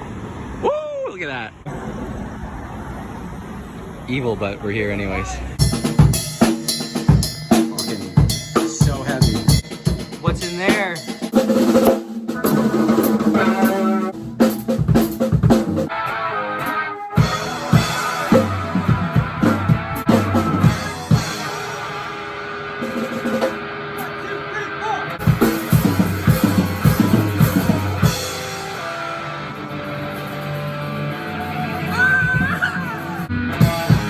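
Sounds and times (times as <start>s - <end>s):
sustained guitar notes: 5.3s - 11.3s, 12.3s - 14.3s, 15.9s - 34.0s.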